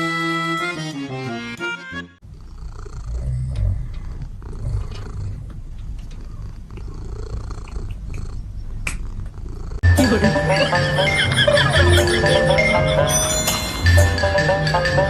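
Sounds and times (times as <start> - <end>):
cat purring: 2.2 - 9.9.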